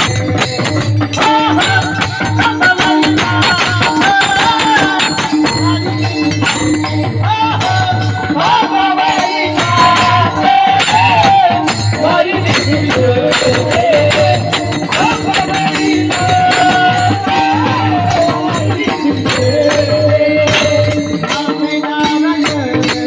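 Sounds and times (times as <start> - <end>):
drum beat: 0.0 - 23.0
hand cymbals jingling: 0.0 - 23.0.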